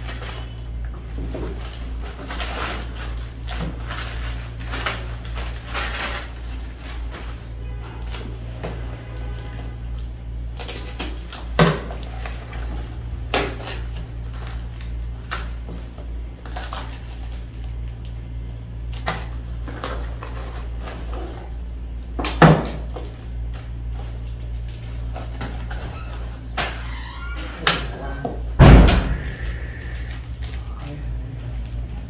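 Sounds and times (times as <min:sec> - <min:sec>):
packaging handling noise: 0:00.0 - 0:21.8
steady low hum: 0:22.9 - 0:32.0.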